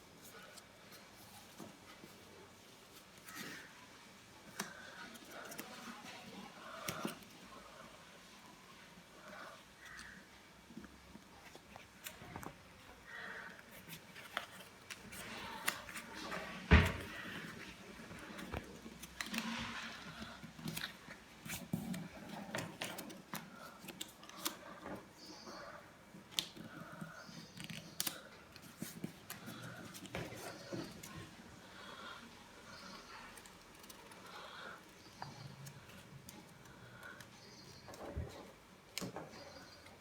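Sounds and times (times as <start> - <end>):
paper rustling and crinkling: 11.4 - 25.6.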